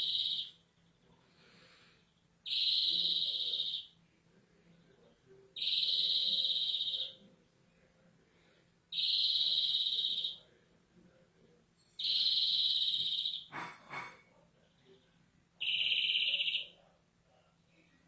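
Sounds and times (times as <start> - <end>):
greenfinch singing long high notes: 0.0 - 0.6, 2.4 - 3.9, 5.6 - 7.3, 12.0 - 13.5, 15.6 - 16.8.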